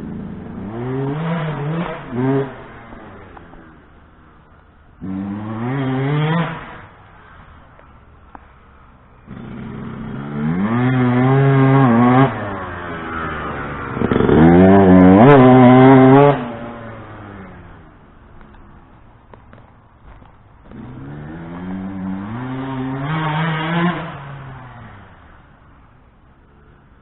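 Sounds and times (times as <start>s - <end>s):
motocross engine revving: 0.0s - 3.9s, 4.9s - 7.3s, 9.2s - 18.5s, 20.6s - 25.4s.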